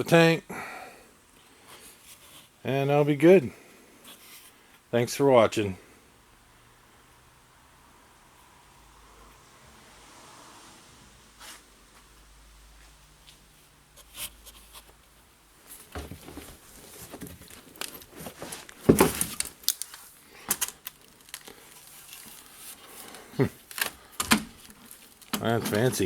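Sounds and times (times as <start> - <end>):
rustling scrapes: 11.4 - 11.7, 15.6 - 20.2, 21.0 - 26.0
handling clicks and knocks: 15.8 - 21.5, 23.7 - 26.0.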